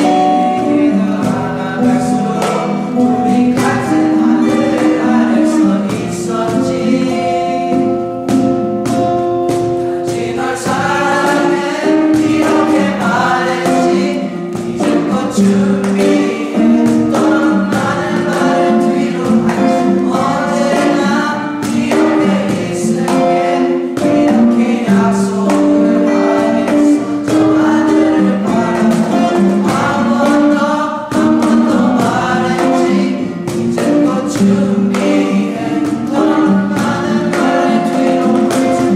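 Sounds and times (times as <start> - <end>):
choir singing: 0.0 - 38.9
instrumental accompaniment: 0.0 - 38.9.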